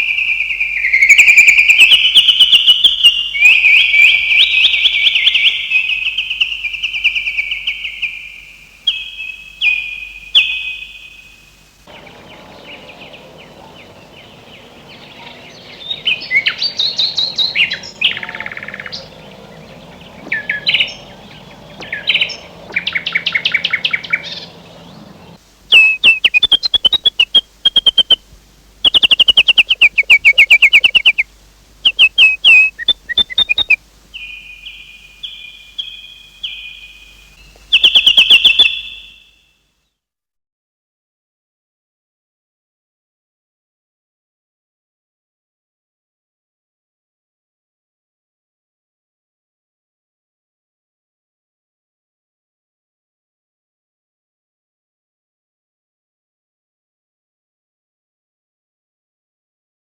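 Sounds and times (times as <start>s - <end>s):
songbirds chirping and trilling: 0.0s - 39.4s
faint background hum: 0.0s - 39.6s.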